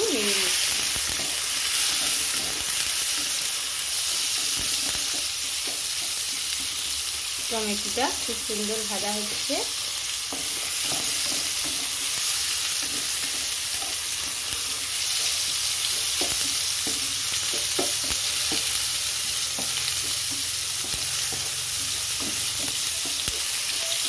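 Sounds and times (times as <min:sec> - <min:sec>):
food sizzling in hot oil: 0:00.0 - 0:24.0
utensil scraping and tapping pan: 0:19.4 - 0:24.0.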